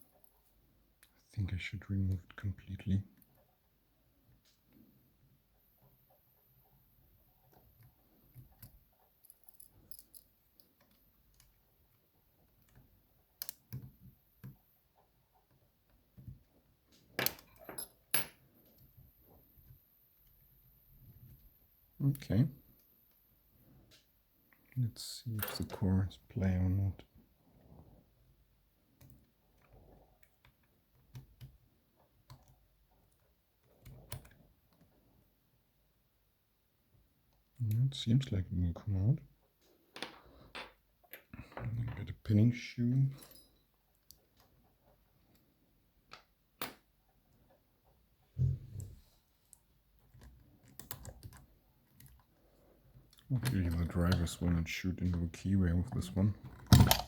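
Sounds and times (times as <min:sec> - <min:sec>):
metallic lock clicks and taps: 0:13.4 - 0:14.6, 0:56.5 - 0:57.0.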